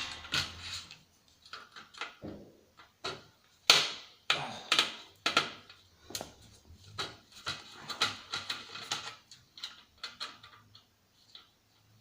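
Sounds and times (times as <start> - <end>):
plastic parts knocking: 1.4 - 10.9
plastic parts scraping: 4.7 - 11.6.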